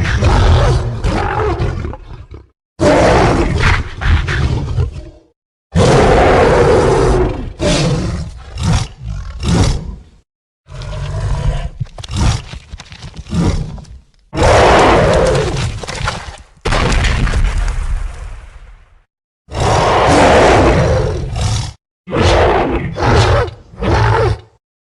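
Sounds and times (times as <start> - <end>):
giant gorilla roar: 2.8 - 9.9, 19.5 - 24.5.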